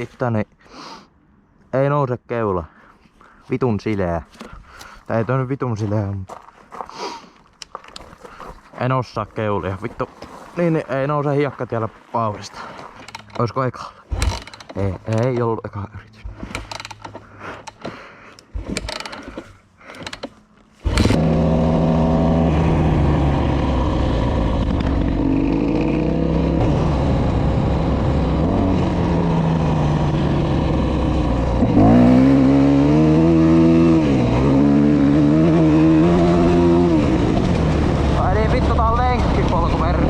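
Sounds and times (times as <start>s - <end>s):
motorcycle engine revving: 20.8s - 40.0s.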